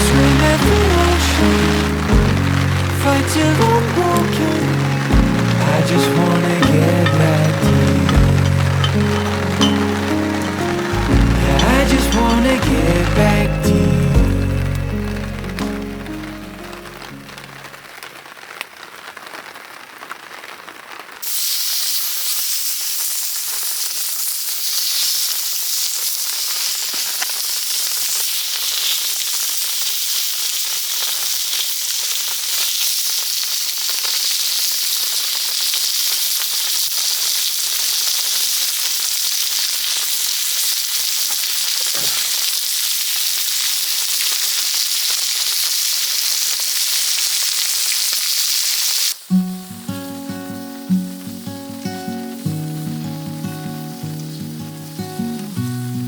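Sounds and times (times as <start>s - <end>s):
steady dense hiss: 0.0s - 19.0s, 48.5s - 56.0s.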